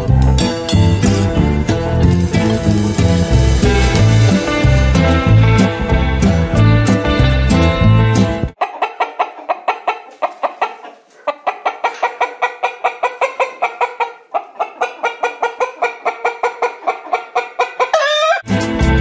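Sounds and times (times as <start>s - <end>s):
chickens clucking: 7.5s - 18.5s.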